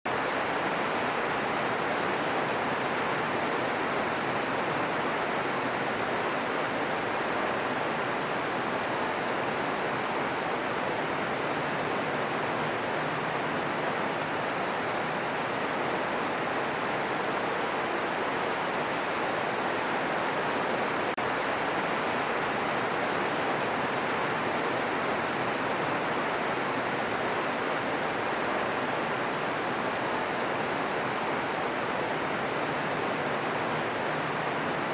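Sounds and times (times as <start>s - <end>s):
steady green noise hiss: 0.1s - 34.9s.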